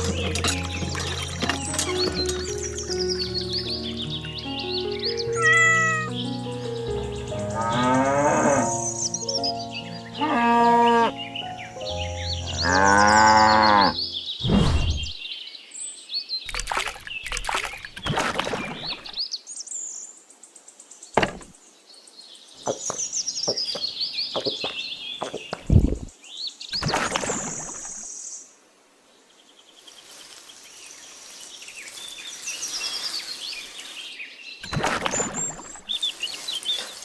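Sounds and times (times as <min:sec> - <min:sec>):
birds chirping: 0:00.0 - 0:19.5, 0:20.6 - 0:28.5, 0:29.2 - 0:37.0
sharp knocks and clicks: 0:21.2 - 0:21.6.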